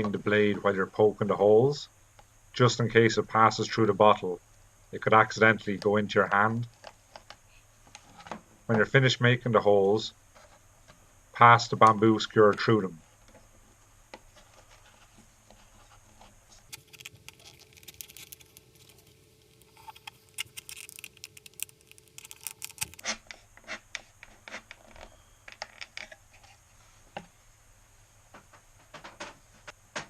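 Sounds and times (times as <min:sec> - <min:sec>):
skewer scratching plastic bottle: 0:14.4 - 0:24.9.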